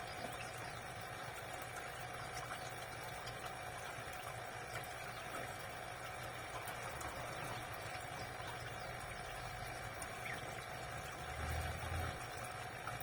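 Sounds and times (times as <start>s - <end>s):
aquarium pump humming: 0.0s - 13.0s
water bubbling: 0.0s - 13.0s.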